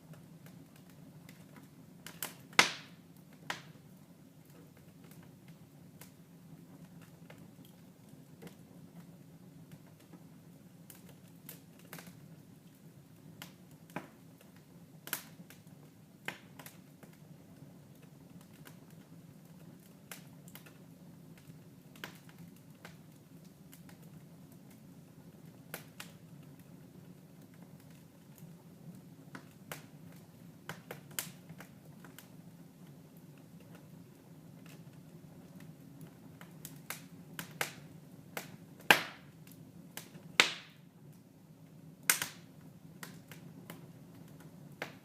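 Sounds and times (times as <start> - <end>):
wood fire crackling: 0.0 - 45.0
sharp pops: 40.4 - 40.7.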